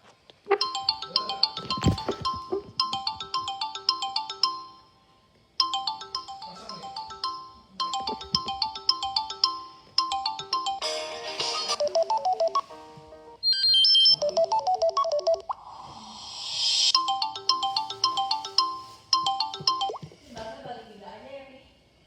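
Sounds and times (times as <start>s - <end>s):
phone ringtone bell-like tune: 0.6s - 5.0s, 5.6s - 12.8s, 13.4s - 15.4s, 16.8s - 20.0s.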